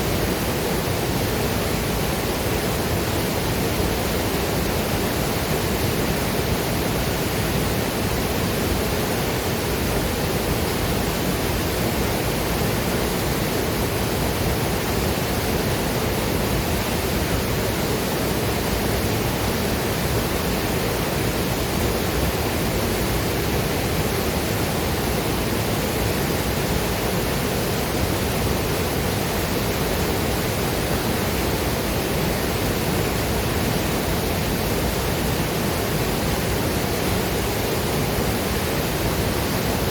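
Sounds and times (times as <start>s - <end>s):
waterfall and river rushing: 0.0s - 39.9s.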